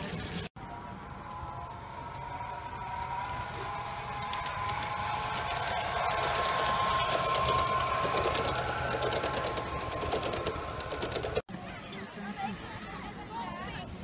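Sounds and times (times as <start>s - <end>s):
small electric motor humming: 1.3s - 11.4s
wheels clicking over rail joints: 1.4s - 11.4s.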